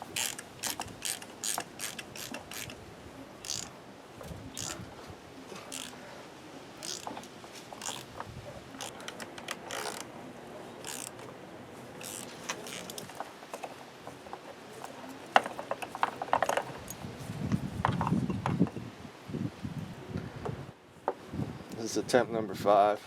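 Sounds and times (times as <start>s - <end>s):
hand ratchet clicking: 0.0s - 2.8s, 3.4s - 3.7s, 4.6s - 4.8s, 5.7s - 6.0s, 6.8s - 7.2s, 7.8s - 8.1s, 8.8s - 10.1s, 10.8s - 11.2s, 12.0s - 13.2s.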